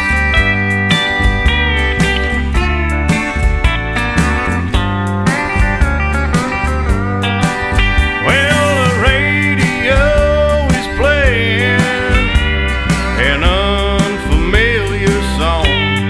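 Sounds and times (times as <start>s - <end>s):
bass: 0.0s - 16.0s
drum beat: 0.0s - 16.0s
steel guitar sliding: 0.0s - 16.0s.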